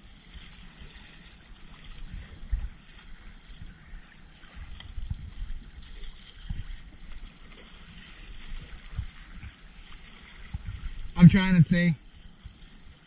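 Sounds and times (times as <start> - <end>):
water splashing against kayak: 0.0 - 13.0
wind noise: 0.0 - 13.0.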